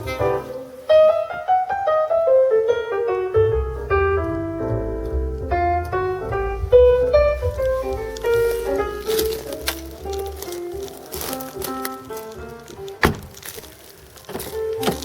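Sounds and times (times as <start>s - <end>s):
jazz piano solo: 0.0s - 15.0s
deep bass line: 3.3s - 13.6s.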